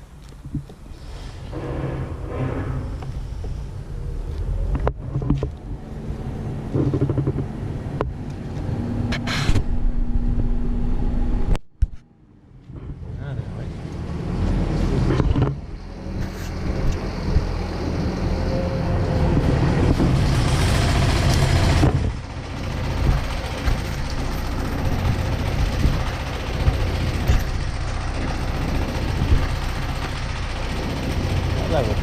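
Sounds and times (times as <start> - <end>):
diesel engine running: 13.7 - 32.0.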